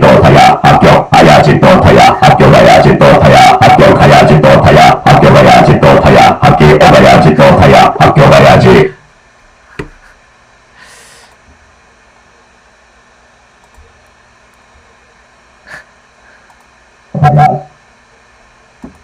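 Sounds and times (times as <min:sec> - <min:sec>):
soft breath: 0:09.6 - 0:11.4, 0:15.6 - 0:16.6
loud burst of breath or voice: 0:09.8 - 0:11.4, 0:15.6 - 0:16.5.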